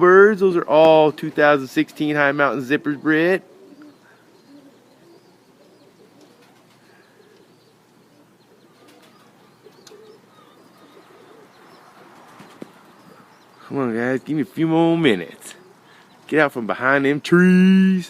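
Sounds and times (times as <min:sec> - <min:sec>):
pigeons cooing: 0:00.0 - 0:16.3
small bird chirps: 0:03.6 - 0:13.7.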